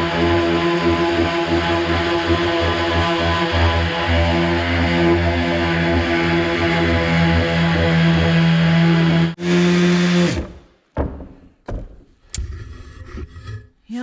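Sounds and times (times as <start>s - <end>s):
electric sander sanding wood: 0.0s - 10.6s
sander winding down: 0.0s - 10.6s.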